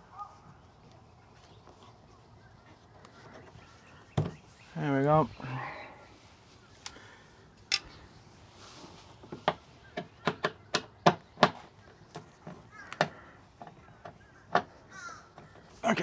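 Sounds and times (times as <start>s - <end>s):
hand tools being handled: 7.7s - 8.0s.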